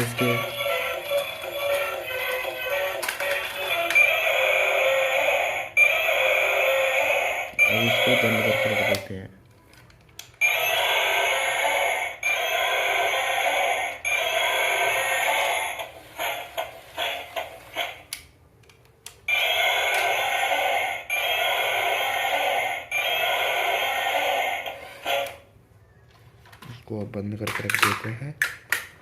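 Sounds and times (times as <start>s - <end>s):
toy sound chip tinny phrase: 7.6s - 9.0s.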